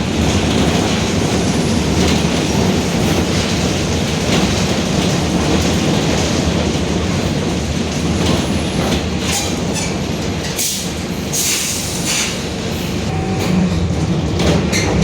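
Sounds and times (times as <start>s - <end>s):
rattles and squeaks from bus body: 0.1s - 15.0s
bus engine droning: 10.6s - 15.0s.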